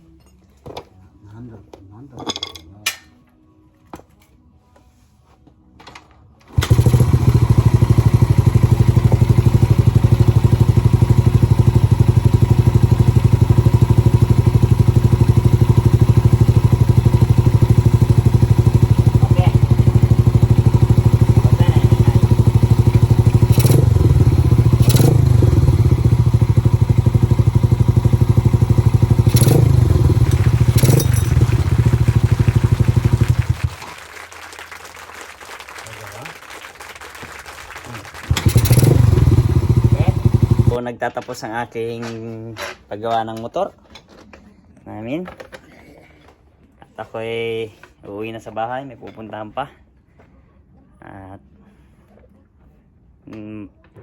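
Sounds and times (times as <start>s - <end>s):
motorcycle engine running: 6.5s - 33.9s, 38.2s - 40.8s
engine knocks: 6.6s - 33.9s, 38.3s - 40.8s.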